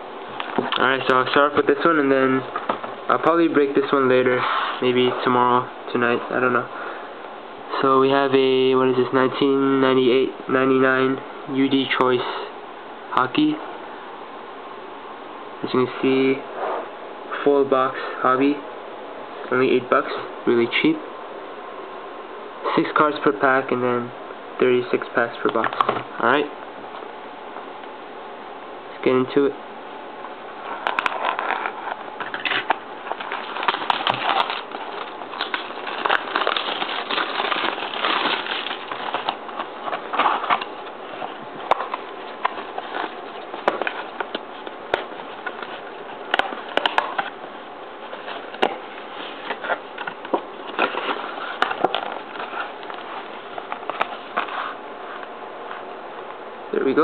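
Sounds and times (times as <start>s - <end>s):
plastic wrapping crackling and tearing: 30.7s - 47.4s.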